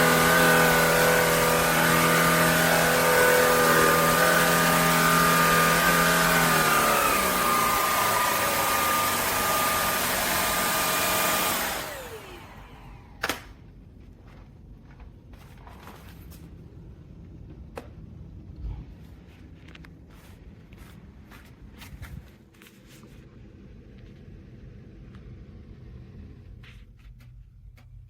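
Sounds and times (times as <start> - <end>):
vacuum motor whining: 0.0 - 13.6.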